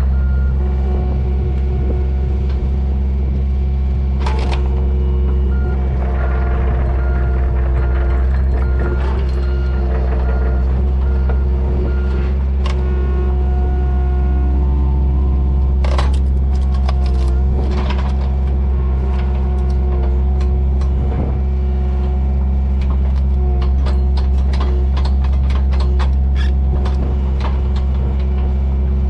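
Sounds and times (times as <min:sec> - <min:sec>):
excavator diesel engine running: 0:00.0 - 0:29.0
alarm beeping: 0:04.7 - 0:15.6.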